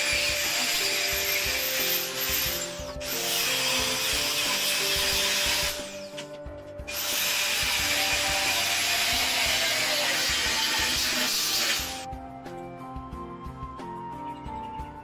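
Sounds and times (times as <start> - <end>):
power tool whirring: 0.0 - 6.3, 6.9 - 12.0
background music: 0.0 - 15.0.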